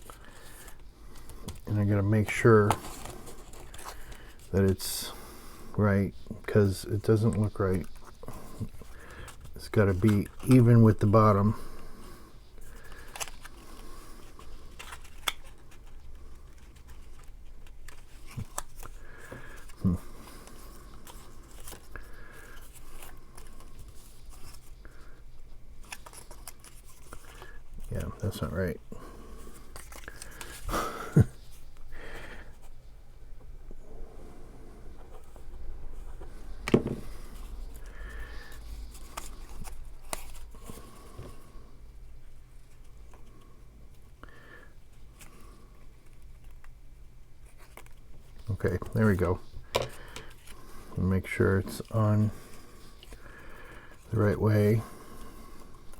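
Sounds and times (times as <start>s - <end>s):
paper rustling: 0.0s - 5.0s, 12.6s - 25.2s, 25.8s - 28.6s, 29.2s - 32.7s, 35.0s - 41.2s
paper rustling and scraping: 0.0s - 5.0s, 29.4s - 31.6s.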